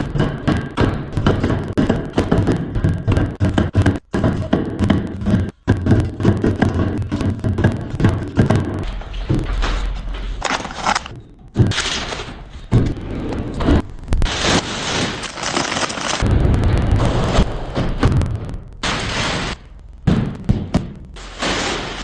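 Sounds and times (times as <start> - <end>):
packaging rustling: 10.4 - 11.1, 14.4 - 16.2.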